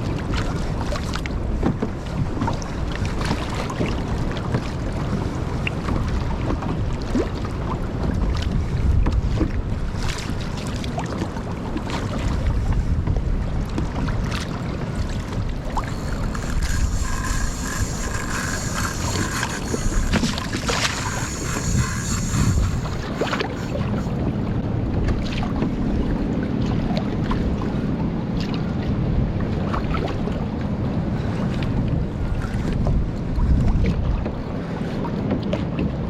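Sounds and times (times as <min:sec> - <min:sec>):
wind buffeting microphone: 0:15.5 - 0:26.0
water slapping against kayak: 0:15.6 - 0:25.9.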